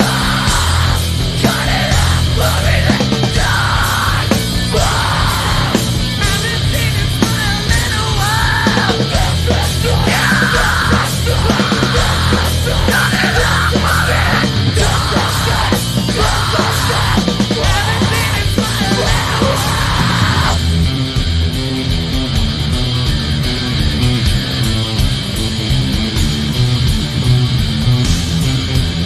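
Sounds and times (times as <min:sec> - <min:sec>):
shouted vocals: 0:00.0 - 0:20.6
live rock band playing: 0:00.0 - 0:29.0.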